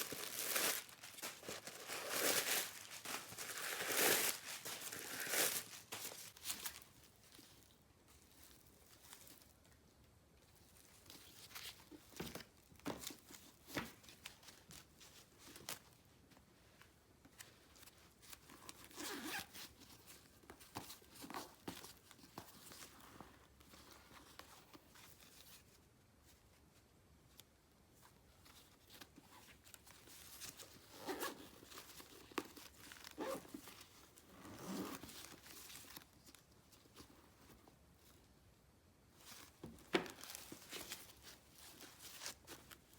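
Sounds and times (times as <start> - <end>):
handbag and packaging rustling: 0.0 - 9.6, 17.3 - 25.8, 28.4 - 38.3, 39.1 - 42.9.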